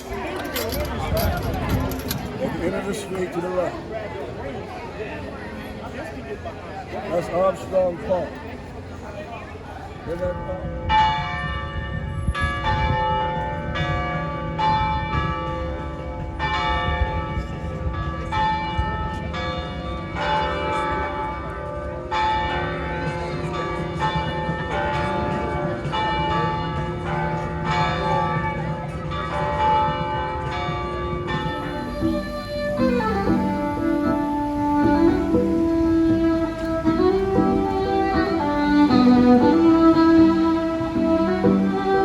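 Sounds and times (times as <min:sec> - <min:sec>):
church bells pealing: 0:10.3 - 0:42.0.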